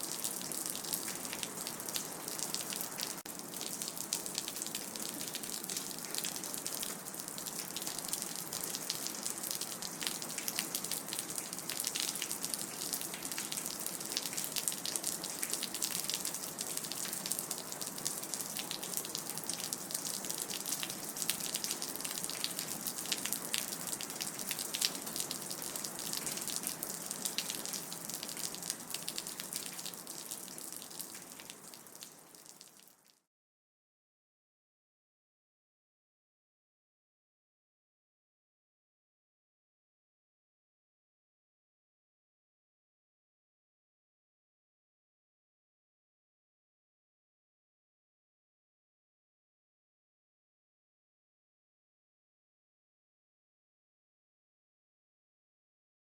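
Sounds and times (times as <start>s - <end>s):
rain dripping: 0.0s - 33.2s.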